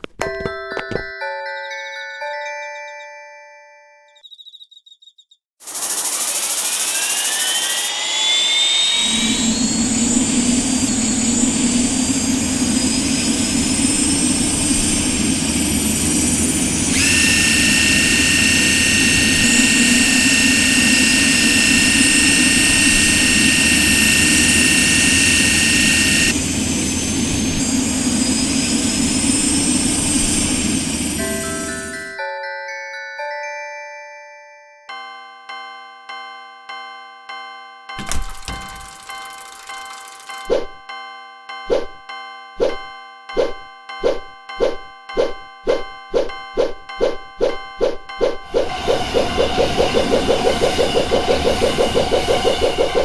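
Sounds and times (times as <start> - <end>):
steady whistling tone: 5.7 - 16.3, 16.9 - 31.7, 44.6 - 53.0
high engine whine: 5.7 - 32.0, 48.5 - 53.0.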